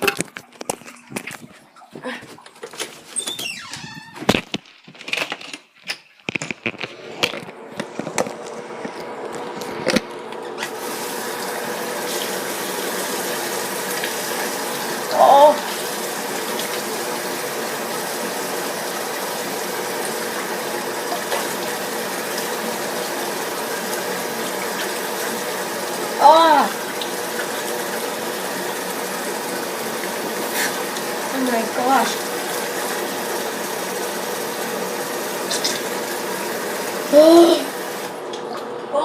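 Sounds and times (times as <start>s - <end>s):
tap water running into sink: 7.8s - 38.7s.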